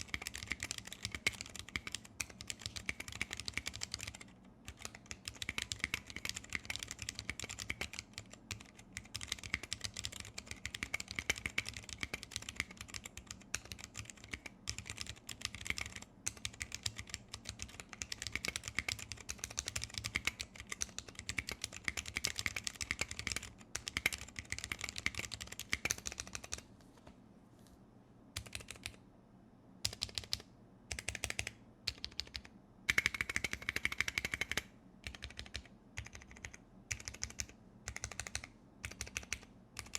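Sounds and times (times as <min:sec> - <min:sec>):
fast keyboard typing: 0:00.0 - 0:26.6, 0:28.4 - 0:29.0, 0:29.9 - 0:39.9.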